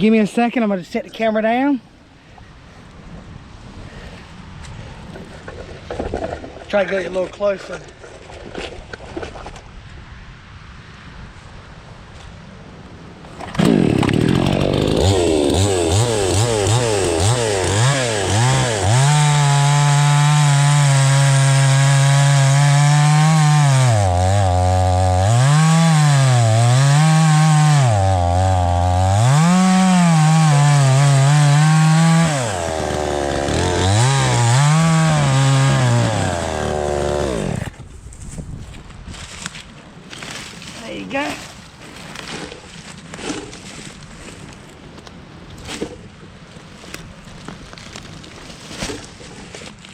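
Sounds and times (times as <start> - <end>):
chainsaw cutting log: 13.4 - 37.8, 42.0 - 43.9.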